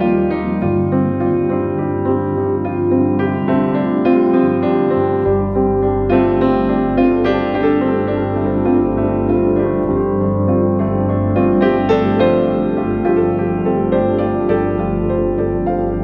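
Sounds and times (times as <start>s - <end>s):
soft slow piano music: 0.0s - 16.0s
low bass note: 4.9s - 16.0s.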